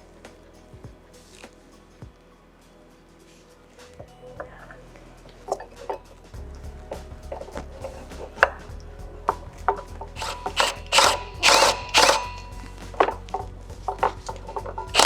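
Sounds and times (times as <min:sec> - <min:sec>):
light background music: 0:00.0 - 0:15.0
hand tools clicking on metal: 0:10.2 - 0:15.0.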